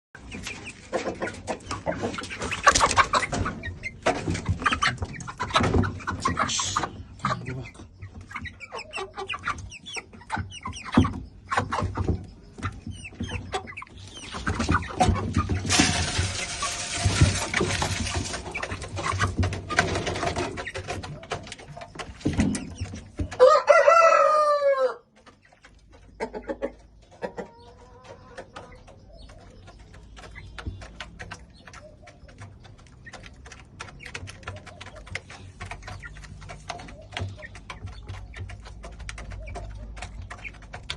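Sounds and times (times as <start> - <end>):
chickens clucking: 0.2 - 40.9
pecking and scratching clicks: 9.0 - 23.4, 25.1 - 40.9
rooster crowing: 23.4 - 25.0.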